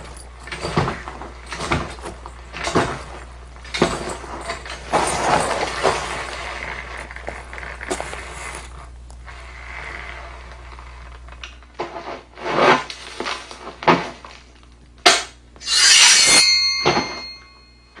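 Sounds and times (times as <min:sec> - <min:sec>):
scraping strokes: 0:03.8 - 0:11.2, 0:11.8 - 0:13.8, 0:15.6 - 0:17.6
scrape with metallic ring: 0:15.6 - 0:18.0.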